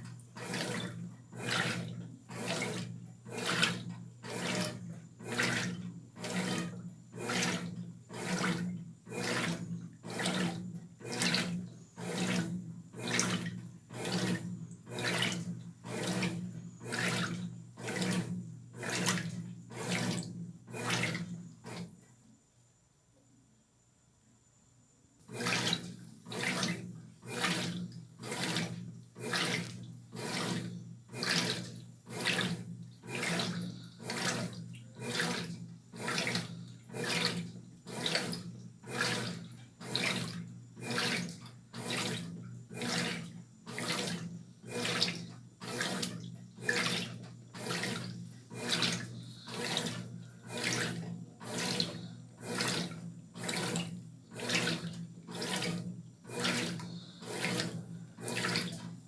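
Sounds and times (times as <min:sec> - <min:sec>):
washing machine water swishing: 0:00.0 - 0:22.0, 0:25.2 - 0:59.0
motor hum: 0:25.4 - 0:59.0.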